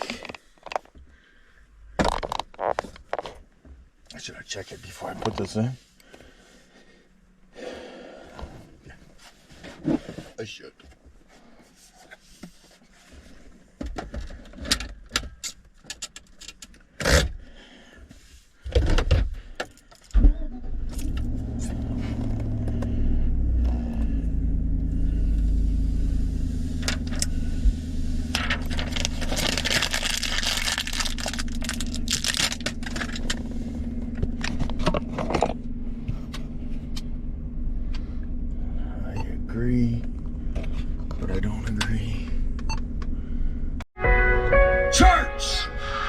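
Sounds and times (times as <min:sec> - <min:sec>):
car engine starting and idling: 0:20.1 - 0:43.8.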